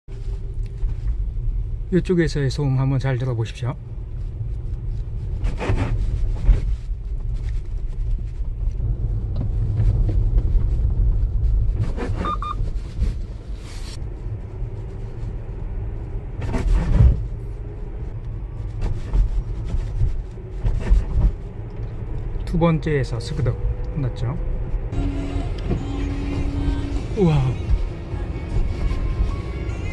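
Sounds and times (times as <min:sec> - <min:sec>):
low road rumble: 0:00.0 - 0:29.9
suspension knocking and clunking: 0:05.4 - 0:13.3, 0:18.7 - 0:22.4.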